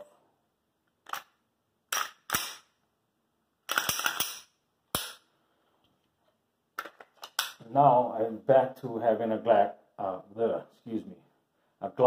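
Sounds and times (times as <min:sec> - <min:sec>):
metallic clicks of pistol parts: 0:01.0 - 0:02.7, 0:03.7 - 0:05.2, 0:06.8 - 0:07.6.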